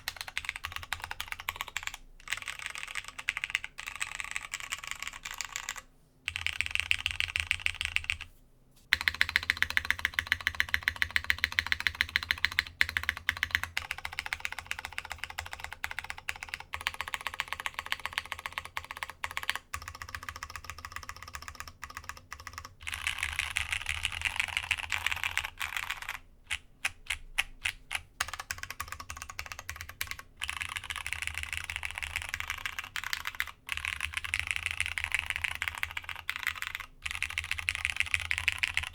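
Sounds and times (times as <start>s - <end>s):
mechanical keyboard typing: 0.0s - 8.3s, 9.0s - 38.9s.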